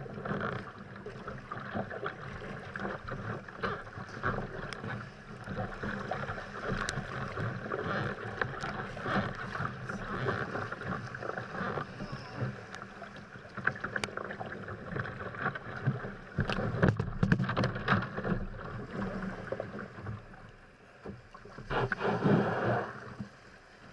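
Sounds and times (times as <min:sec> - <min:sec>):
water lapping against a hull: 0:00.0 - 0:23.9
water rush: 0:00.0 - 0:23.9
small knocks and clicks: 0:13.5 - 0:18.7.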